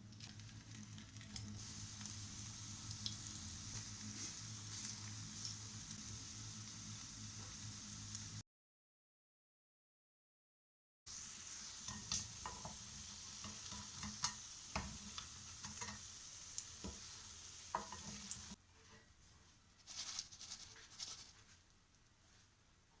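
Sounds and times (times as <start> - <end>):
faint crackle: 0.0 - 6.8
potatoes sizzling in hot oil: 0.1 - 8.4, 11.1 - 18.6
utensil tapping and scraping pan: 11.8 - 12.8, 13.4 - 16.1, 17.7 - 19.0.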